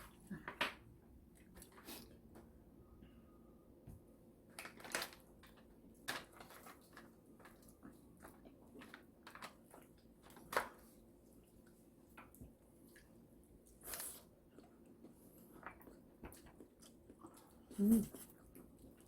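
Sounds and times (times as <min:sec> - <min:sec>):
chewing fried chicken: 0:11.3 - 0:19.0.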